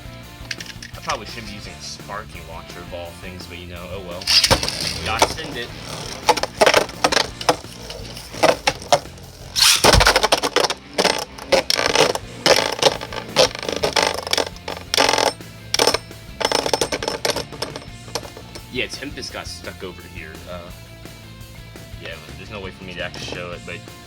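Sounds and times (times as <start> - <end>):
spinning tops clashing: 0.4 - 1.5, 4.2 - 18.7.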